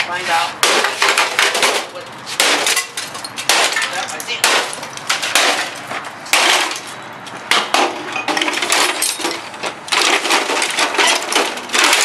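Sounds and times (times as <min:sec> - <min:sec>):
metal and plastic parts clattering: 0:07.5 - 0:12.0.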